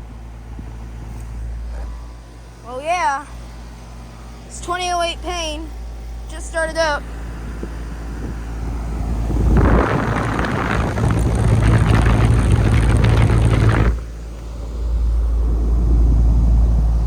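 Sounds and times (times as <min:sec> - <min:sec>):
air conditioner humming: 0:00.0 - 0:17.0
loud rushing of air: 0:07.3 - 0:17.0.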